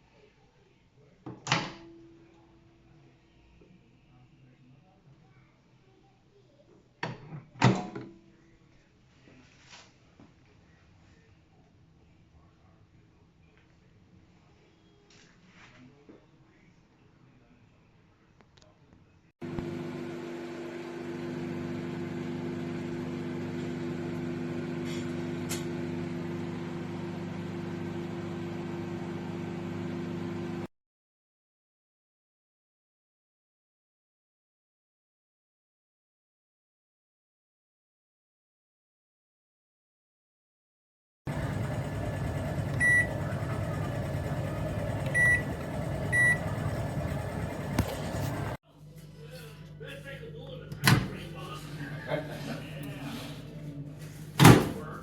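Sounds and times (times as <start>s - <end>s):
microwave oven hum and fan: 19.4s - 30.7s, 41.3s - 55.0s.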